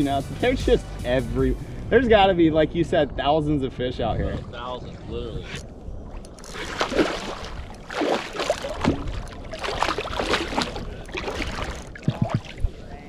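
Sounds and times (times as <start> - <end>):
water splashing and sloshing: 4.0 - 13.0.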